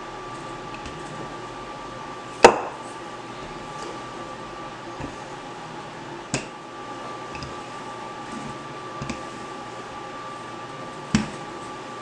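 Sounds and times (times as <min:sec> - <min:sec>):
kitchen hum with faint whine: 0:00.0 - 0:12.0
dough being kneaded: 0:00.1 - 0:12.0.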